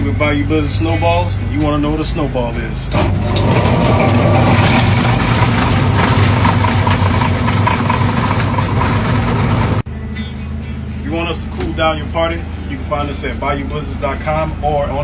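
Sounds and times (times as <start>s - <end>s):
ice shaver grinding ice: 3.1s - 9.8s.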